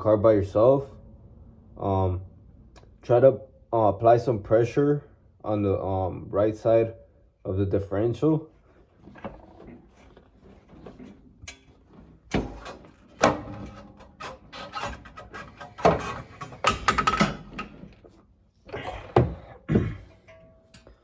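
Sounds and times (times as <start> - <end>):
metal knocks and clanks: 9.1 - 18.1, 19.1 - 21.0
ringing metal strikes: 20.2 - 21.0.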